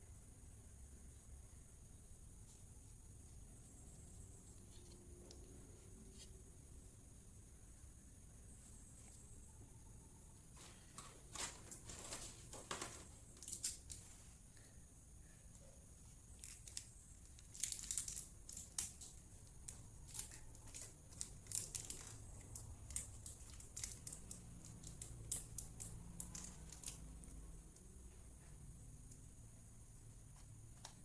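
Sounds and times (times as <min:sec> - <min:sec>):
clicks and crinkles of handling: 0:10.5 - 0:14.7, 0:15.5 - 0:29.3.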